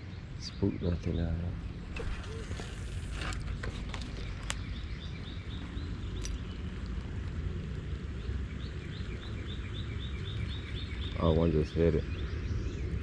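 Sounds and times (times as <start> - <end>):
low outdoor rumble: 0.0 - 13.0
small bird chirping: 7.7 - 13.0.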